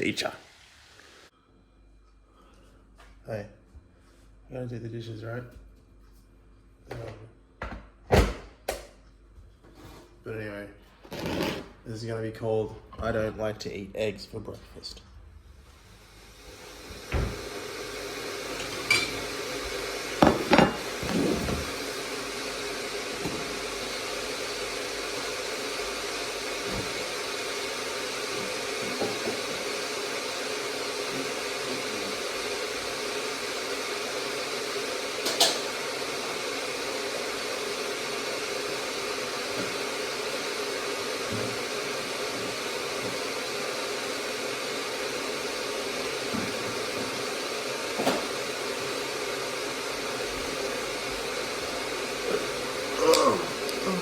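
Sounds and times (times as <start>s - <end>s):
dishes clattering: 18.6s - 19.3s, 20.2s - 21.6s
whirring motor hum: 48.8s - 54.0s.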